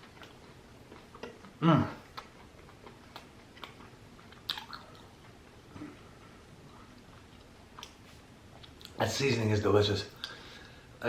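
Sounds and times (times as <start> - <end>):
person chewing crunchy food: 0.0 - 5.8.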